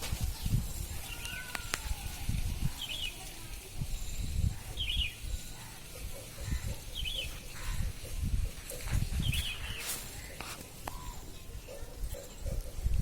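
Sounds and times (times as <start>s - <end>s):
baby bird chirping: 6.3s - 8.0s.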